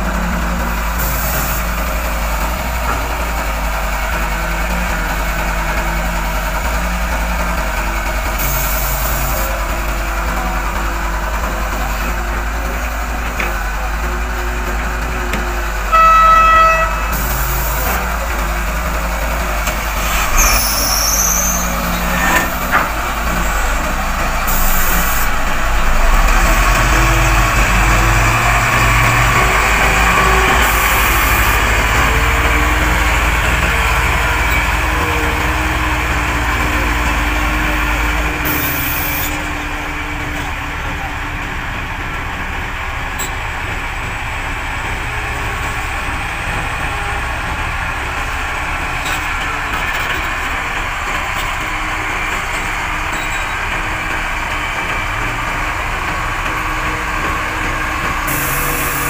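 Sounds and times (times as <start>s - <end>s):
heavy engines running: 0.0s - 59.0s
vehicle horn: 15.8s - 18.4s
short high squeal: 19.8s - 25.4s, 53.1s - 53.6s.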